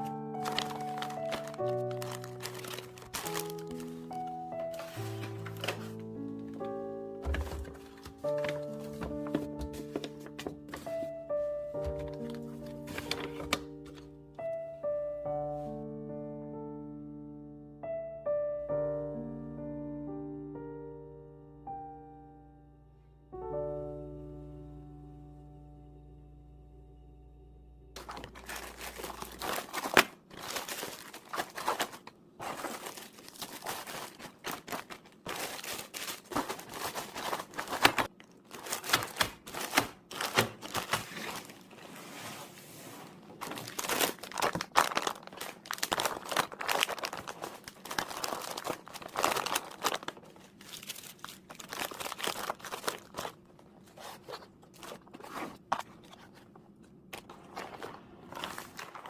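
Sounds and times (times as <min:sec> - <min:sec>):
plastic packaging crinkling: 0:00.0 - 0:14.1, 0:28.0 - 0:42.2, 0:43.2 - 0:56.5, 0:57.1 - 0:59.0.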